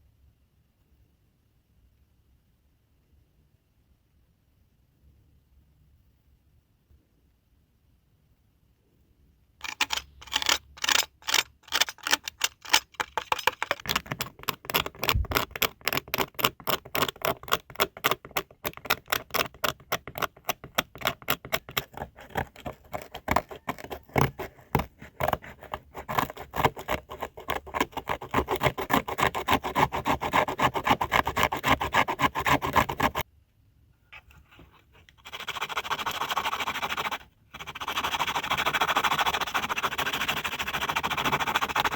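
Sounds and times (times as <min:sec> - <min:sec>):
rapid scraping on plastic: 0:09.6 - 0:33.2, 0:35.2 - 0:41.9
steady scraping or rubbing: 0:09.6 - 0:33.2, 0:34.1 - 0:41.9.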